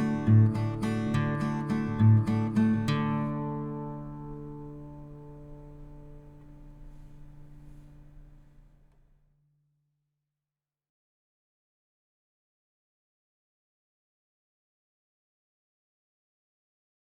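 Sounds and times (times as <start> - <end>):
acoustic guitar chord ringing: 0.0 - 9.0.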